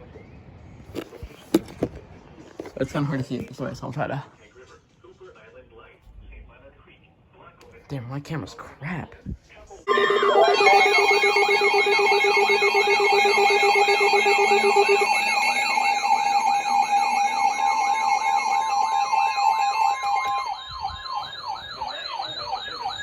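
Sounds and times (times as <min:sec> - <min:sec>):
rapid electronic beeping: 0:09.9 - 0:23.0
siren-like rising sweep: 0:09.9 - 0:23.0
steady electronic alert tones: 0:09.9 - 0:23.0.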